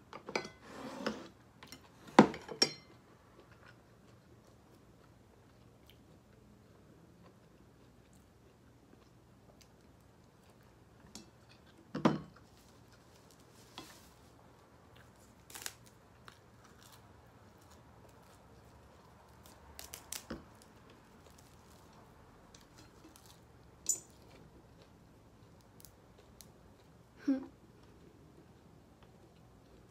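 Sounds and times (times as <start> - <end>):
person chewing food: 2.9 - 29.9.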